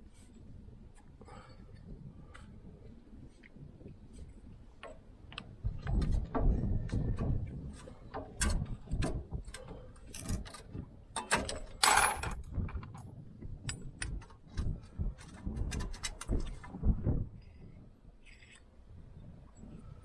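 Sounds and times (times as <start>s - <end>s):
metallic clicks and knocks: 5.8s - 13.0s, 15.2s - 16.7s.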